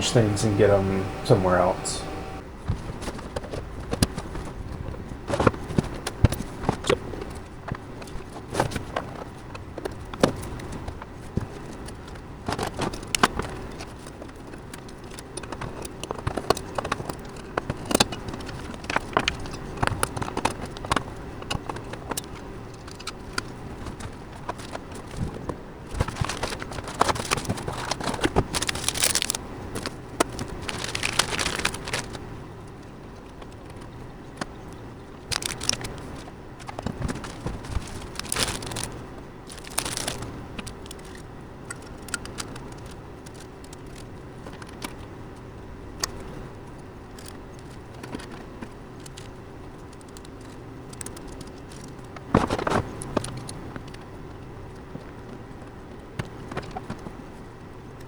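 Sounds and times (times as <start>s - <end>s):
steady low hum: 0.0s - 2.4s
metal parts clattering: 30.6s - 32.1s, 39.5s - 40.2s
metal parts clinking and rattling: 30.6s - 32.2s, 37.2s - 38.9s, 39.5s - 40.2s.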